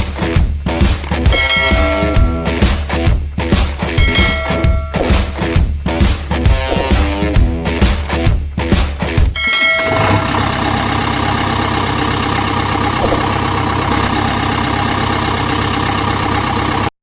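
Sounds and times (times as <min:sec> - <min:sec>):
music: 0:00.0 - 0:09.8
diesel engine idling: 0:01.0 - 0:02.7, 0:03.8 - 0:05.5, 0:09.5 - 0:17.0.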